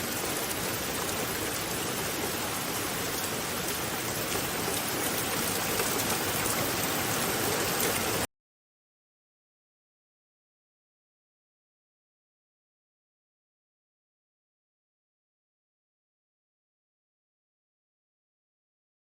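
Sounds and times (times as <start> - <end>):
rushing water hiss: 0.0 - 8.3.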